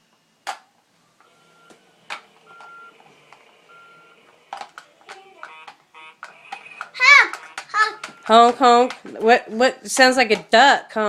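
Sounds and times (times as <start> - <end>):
short electronic beeps: 3.7 - 4.2, 7.4 - 8.4
scattered clicks and knocks: 4.5 - 9.3.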